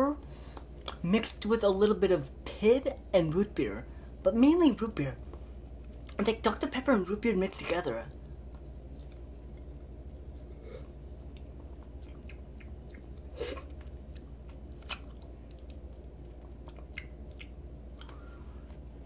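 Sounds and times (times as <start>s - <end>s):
low steady hum: 0.0s - 19.0s
person chewing with crunches: 8.1s - 18.9s.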